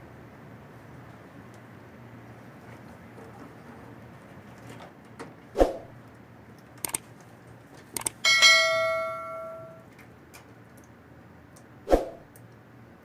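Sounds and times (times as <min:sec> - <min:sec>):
light clicks: 0:06.8 - 0:07.0, 0:08.0 - 0:08.2
metal object ringing like a bell: 0:08.2 - 0:09.8.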